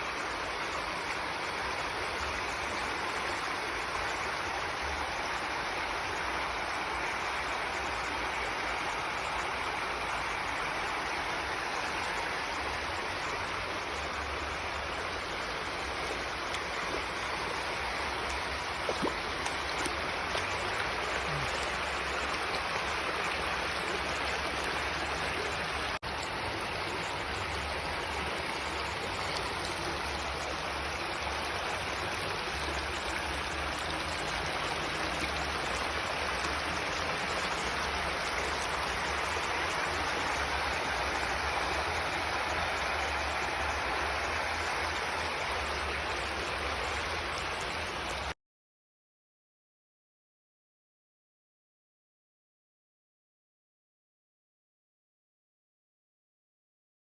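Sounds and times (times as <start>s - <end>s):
floodwater rushing: 8.5s - 48.3s.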